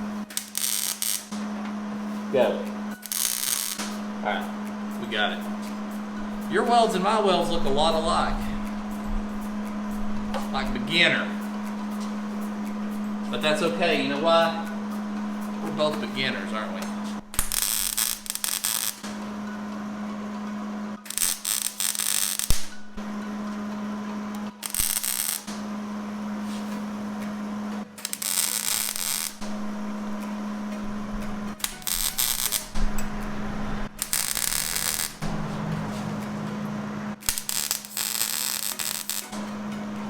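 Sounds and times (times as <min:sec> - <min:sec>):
welder arc crackling: 0:00.0 - 0:01.5, 0:02.7 - 0:19.2, 0:21.0 - 0:23.2, 0:24.3 - 0:25.8, 0:28.0 - 0:35.6, 0:37.2 - 0:40.0
steady hum: 0:00.0 - 0:40.0.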